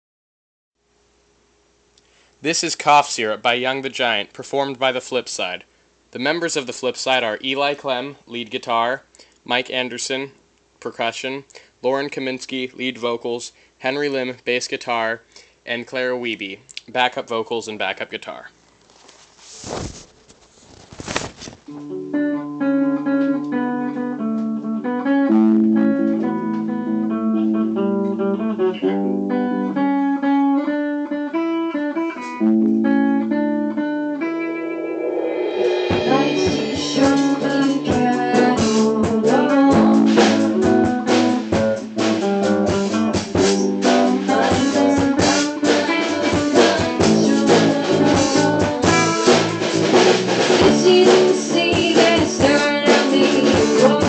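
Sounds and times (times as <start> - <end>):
guitar playing: 21.7 - 54.0
live band playing: 34.2 - 54.0
drum kit beat: 34.4 - 54.0.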